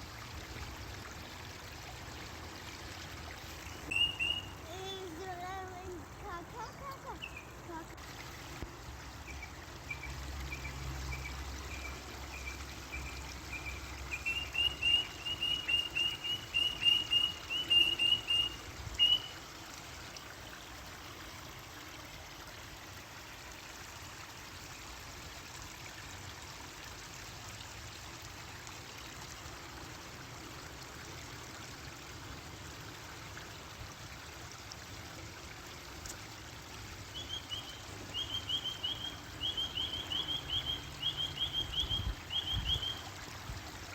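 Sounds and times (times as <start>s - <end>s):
running water hiss: 0.0s - 43.9s
bird calling rapid notes: 3.9s - 4.6s, 13.0s - 19.4s, 37.1s - 43.0s.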